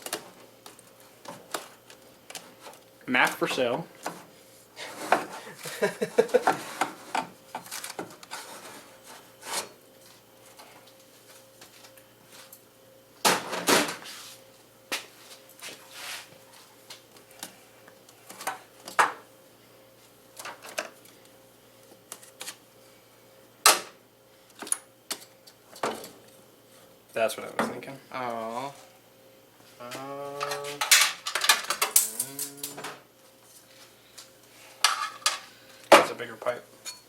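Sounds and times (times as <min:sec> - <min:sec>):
faint steady hum: 0:00.0 - 0:37.0
tools and parts clattering: 0:30.8 - 0:33.0.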